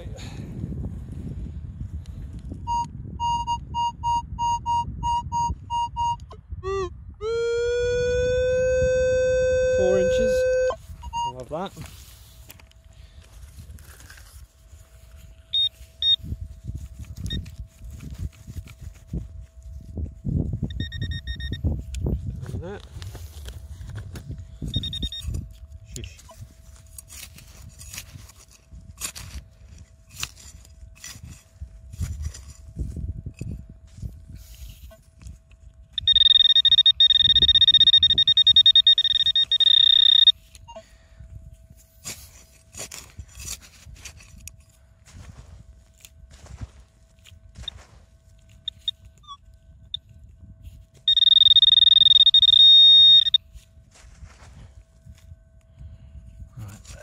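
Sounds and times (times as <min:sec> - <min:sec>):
faint steady hum: 0:00.0 - 0:57.0
pinpointer pulsing buzz: 0:02.5 - 0:11.7, 0:14.4 - 0:57.0
metal detector beeps: 0:02.6 - 0:06.4, 0:07.2 - 0:11.7, 0:15.5 - 0:16.4, 0:17.1 - 0:17.6, 0:20.6 - 0:22.0, 0:24.6 - 0:26.4, 0:35.8 - 0:40.9, 0:45.3 - 0:55.3
knocks and scuffs of digging: 0:25.2 - 0:33.0, 0:41.8 - 0:49.0.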